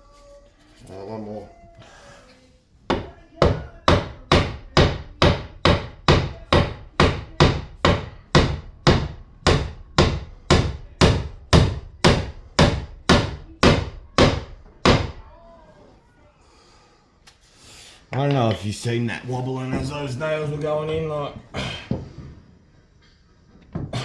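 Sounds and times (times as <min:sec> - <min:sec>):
hammer driving nails into wood: 0:02.9 - 0:15.2.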